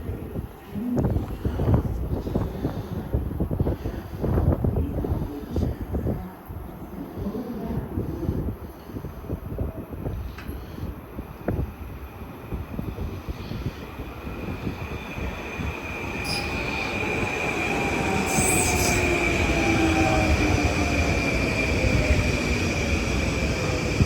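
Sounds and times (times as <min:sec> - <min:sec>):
train whine falling in pitch: 0:14.5 - 0:22.7
train wheel squeal: 0:15.8 - 0:21.8.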